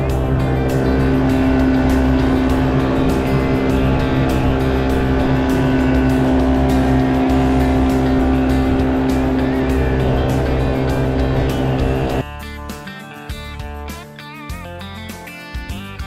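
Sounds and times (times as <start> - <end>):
outboard motor droning: 0.0 - 12.2.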